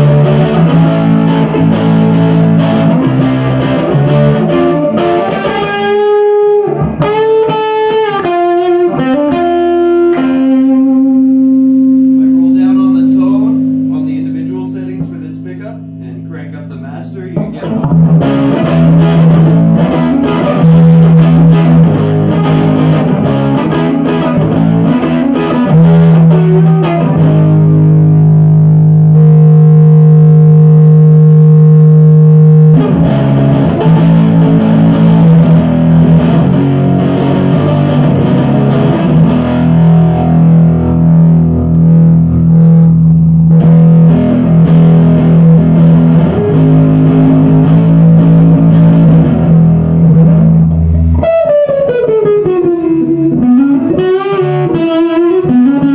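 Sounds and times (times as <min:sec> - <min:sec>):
electric guitar notes and chords: 0:00.0 - 0:55.9.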